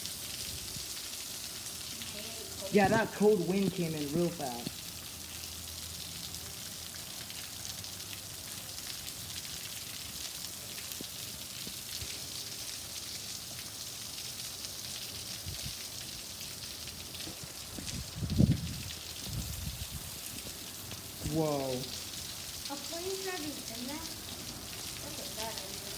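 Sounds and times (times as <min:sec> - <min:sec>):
heavy rain hissing: 0:00.0 - 0:04.8, 0:17.2 - 0:25.9.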